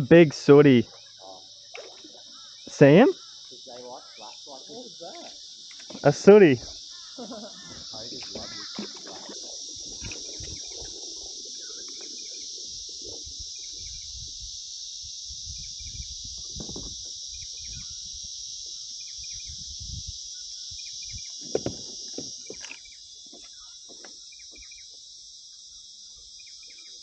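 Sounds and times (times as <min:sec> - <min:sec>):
insect chorus droning: 0:00.0 - 0:27.0.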